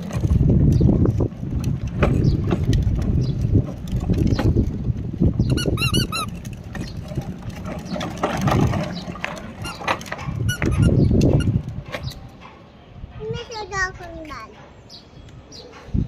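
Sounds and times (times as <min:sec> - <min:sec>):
plastic wheels rolling on rough ground: 0:00.0 - 0:12.7
short high squeaks: 0:05.4 - 0:06.5, 0:09.6 - 0:11.6.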